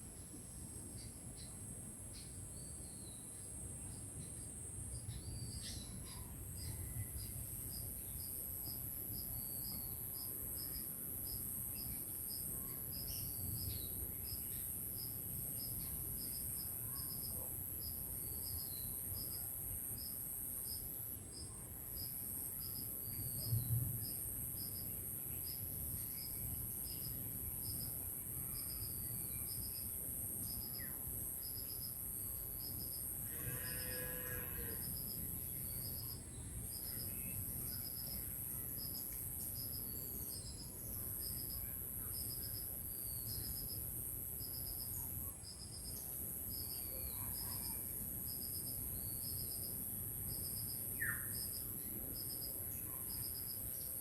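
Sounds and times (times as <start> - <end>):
repeating short insect call: 32.6 - 43.8, 50.5 - 51.7.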